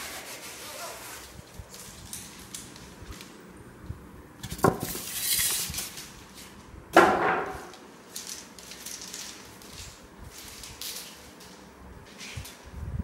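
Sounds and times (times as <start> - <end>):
packaging rustling: 8.0 - 11.6.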